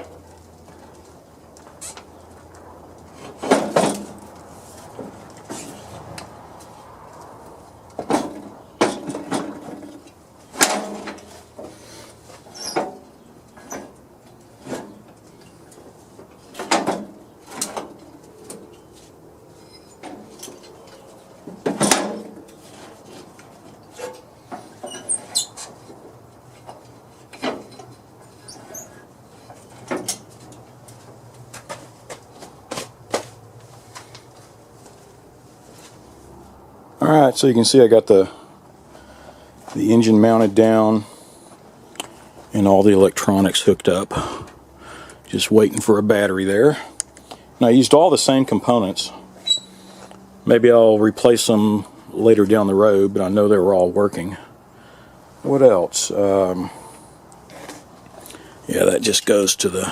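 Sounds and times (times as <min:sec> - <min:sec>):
metal parts and tools clanking: 0:19.6 - 0:30.6.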